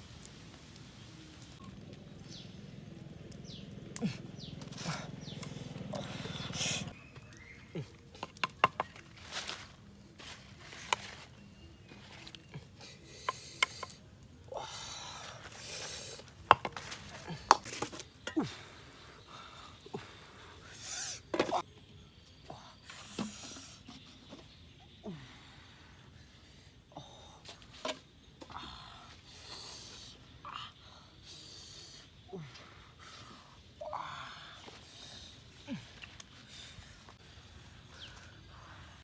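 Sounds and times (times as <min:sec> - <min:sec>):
rustling and scraping: 0:07.8 - 0:14.0, 0:15.3 - 0:18.4.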